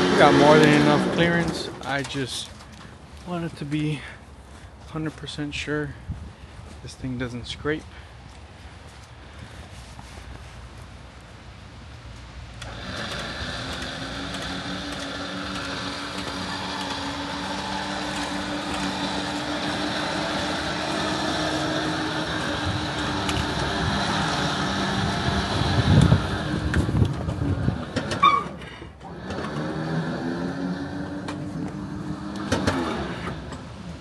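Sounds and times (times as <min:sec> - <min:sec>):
electric winch motor running: 0:00.0 - 0:02.0, 0:12.6 - 0:34.0.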